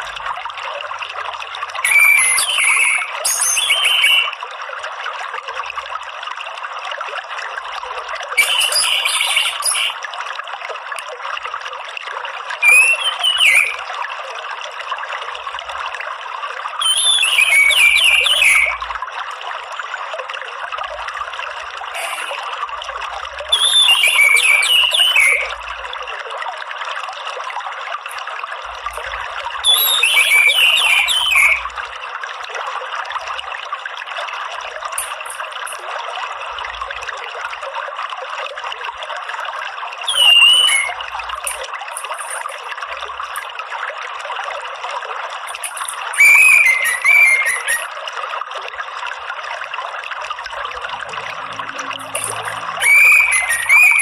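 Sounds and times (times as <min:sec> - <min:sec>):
running water trickling: 0:00.0 - 0:54.0
thrush twittering call: 0:01.8 - 0:04.3, 0:08.4 - 0:10.0, 0:12.6 - 0:13.8, 0:16.8 - 0:18.8, 0:23.6 - 0:25.6, 0:28.9 - 0:31.7, 0:40.1 - 0:42.5, 0:45.5 - 0:47.9, 0:50.8 - 0:54.0.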